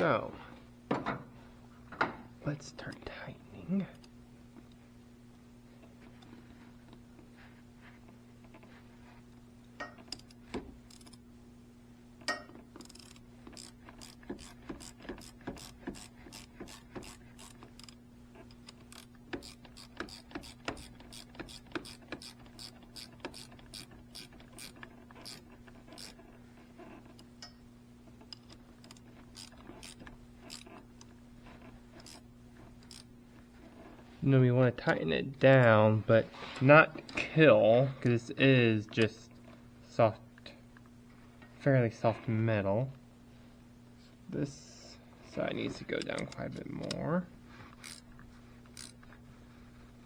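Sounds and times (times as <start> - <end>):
steady low hum: 0.0 - 50.0
hand ratchet clicking: 10.0 - 11.2, 12.7 - 26.2, 28.3 - 31.1, 31.9 - 33.1, 47.8 - 48.1, 48.7 - 49.0.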